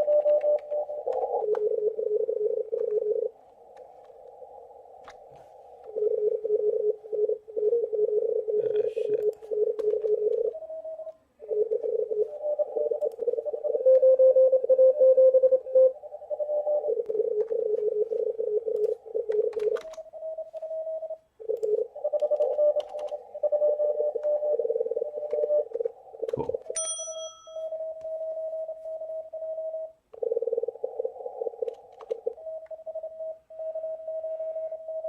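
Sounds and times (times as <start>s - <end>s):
morse code signals: 0.0s - 3.3s, 5.9s - 25.8s.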